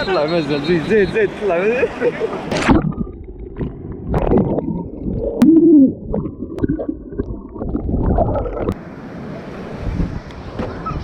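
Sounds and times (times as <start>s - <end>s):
underwater water churning: 2.4s - 8.8s
wind and waves: 6.2s - 11.0s.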